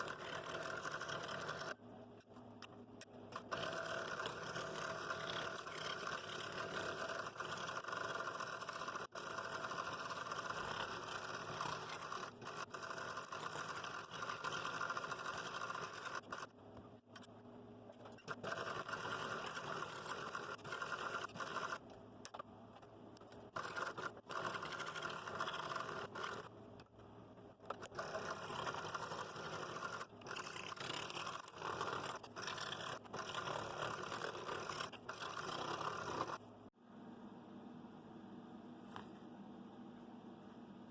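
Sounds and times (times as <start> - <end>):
scroll saw cutting wood: 0.0 - 1.8, 3.3 - 16.6, 18.1 - 21.8, 23.5 - 26.5, 27.6 - 36.4.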